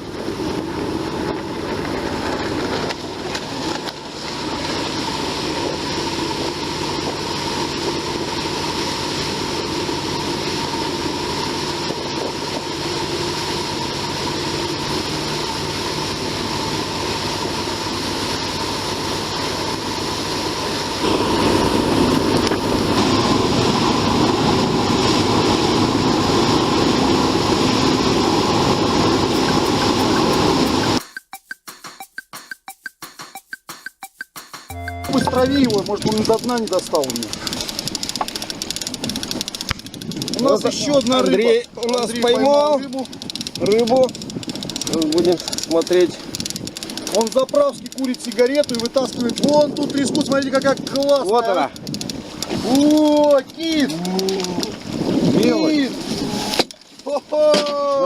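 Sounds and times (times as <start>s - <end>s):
engine running: 0.0s - 31.1s, 34.7s - 57.0s
water noise: 0.0s - 32.5s, 34.7s - 58.0s
wind noise: 38.7s - 47.1s, 48.6s - 53.0s, 54.4s - 56.6s.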